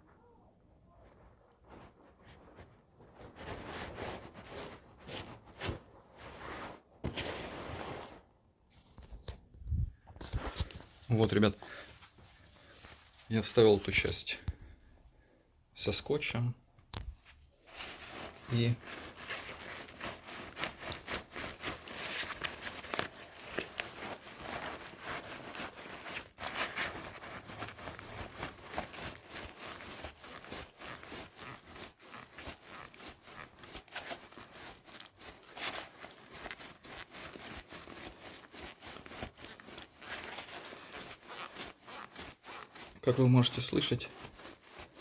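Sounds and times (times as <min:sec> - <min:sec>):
backpack frame wire creaking: 0:25.9 - 0:43.4.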